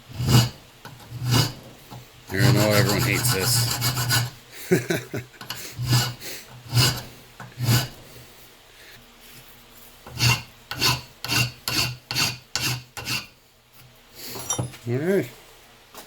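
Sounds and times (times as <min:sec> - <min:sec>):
hand file rasping on metal: 0:00.1 - 0:01.6, 0:02.3 - 0:04.4, 0:05.4 - 0:08.0, 0:10.0 - 0:13.4.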